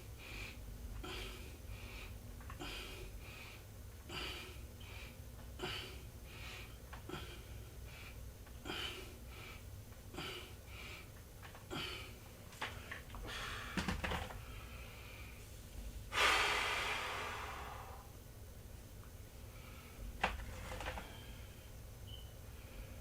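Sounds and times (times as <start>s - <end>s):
person breathing hard: 0.1s - 11.1s, 11.7s - 15.4s, 16.1s - 18.2s.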